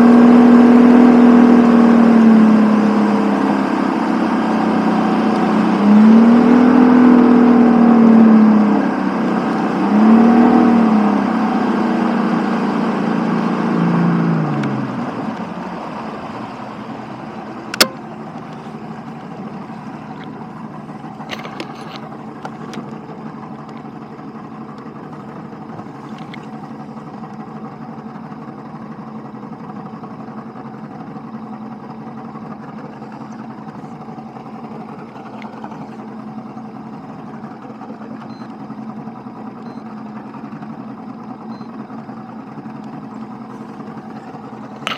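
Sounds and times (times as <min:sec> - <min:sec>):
engine idling: 0:00.0 - 0:44.9
sharp click: 0:17.7 - 0:18.0.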